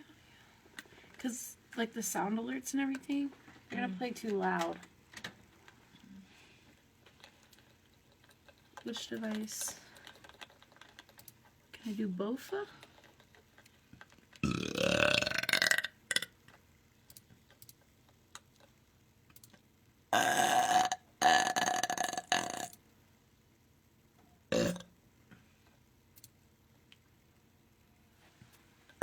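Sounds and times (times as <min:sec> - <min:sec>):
person burping loudly: 0:14.4 - 0:16.3, 0:20.1 - 0:22.8, 0:24.5 - 0:24.9.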